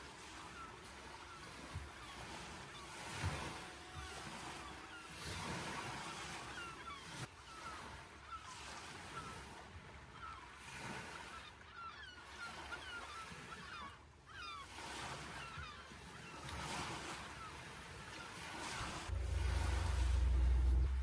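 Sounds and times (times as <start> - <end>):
birds chirping: 19.1 - 21.0
low rumble: 19.1 - 21.0.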